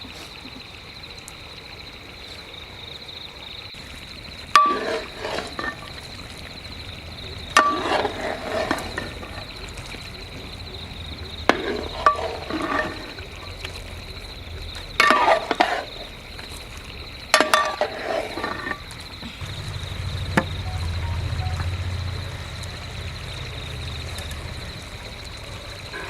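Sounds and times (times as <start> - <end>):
insects chirring: 0.0 - 26.0
metal spoon scraping a pan: 4.6 - 6.0, 7.6 - 9.4, 11.5 - 13.2, 15.0 - 16.1, 17.4 - 18.8
low hum: 19.4 - 25.8.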